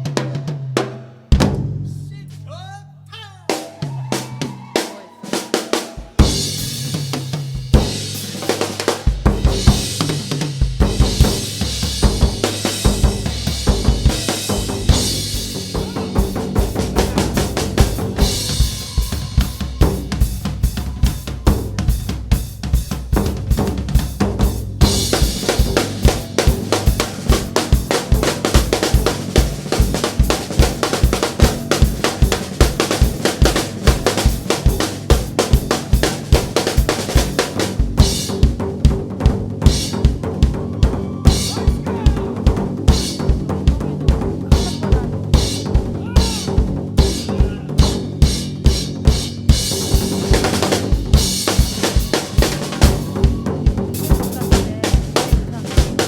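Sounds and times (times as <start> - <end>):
drums and cymbals: 0.0 - 2.7, 3.3 - 56.0
deep bass drum: 9.1 - 56.0.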